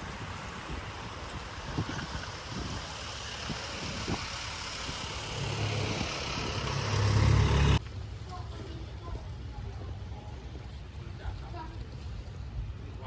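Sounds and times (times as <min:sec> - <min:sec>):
strong wind buffeting microphone: 0:00.0 - 0:07.8.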